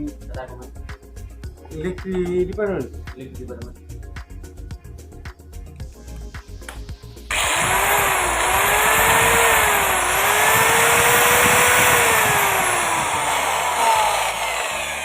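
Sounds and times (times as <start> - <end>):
electric motor whine: 7.3 - 15.0.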